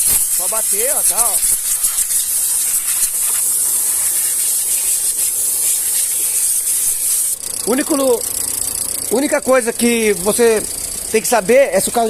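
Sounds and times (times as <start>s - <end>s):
compressed air blow gun hissing: 0.0s - 9.1s.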